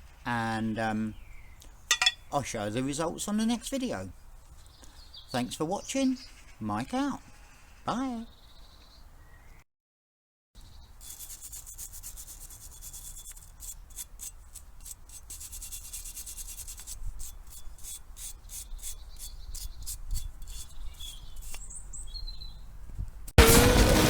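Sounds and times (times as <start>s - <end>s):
wire brush scrubbing metal: 11.0s - 21.8s.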